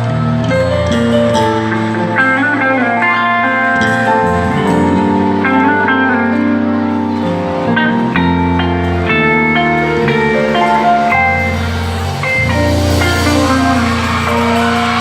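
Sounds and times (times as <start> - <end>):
bass line: 0.0 - 15.0
guitar notes: 0.0 - 15.0.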